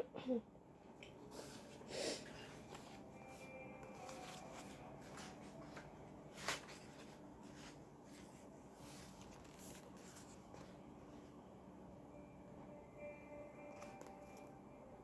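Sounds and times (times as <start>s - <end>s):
book pages rustling: 1.4s - 11.3s.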